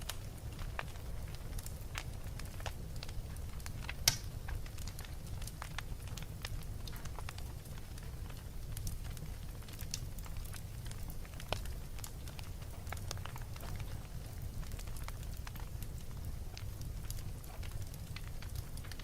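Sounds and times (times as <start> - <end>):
fire crackling: 0.0 - 19.0
fire popping: 0.0 - 19.0.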